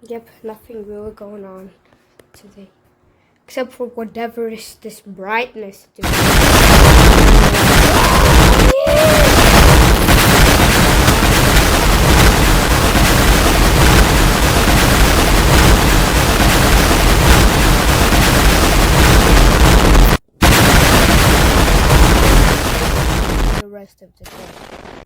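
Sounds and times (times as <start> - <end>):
harsh rumbling crackling noise: 6.0 - 23.6, 24.3 - 25.0.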